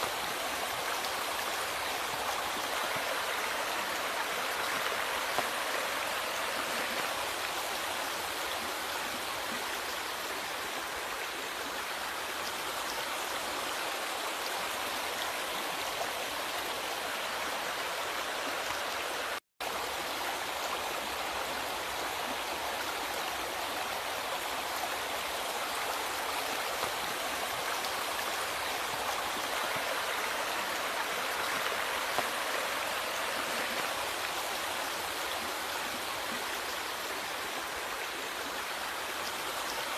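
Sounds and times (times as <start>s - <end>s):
river water flowing: 0.0s - 39.9s.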